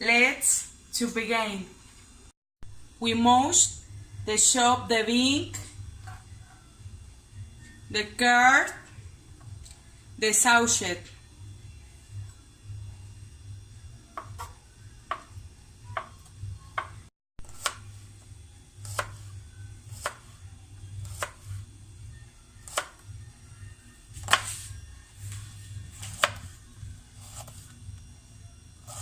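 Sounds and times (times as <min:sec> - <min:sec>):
kitchen knife chopping food: 0:14.1 - 0:17.9, 0:18.8 - 0:19.3, 0:19.9 - 0:20.4, 0:21.0 - 0:21.6, 0:22.6 - 0:23.0, 0:24.2 - 0:24.6, 0:26.0 - 0:26.6.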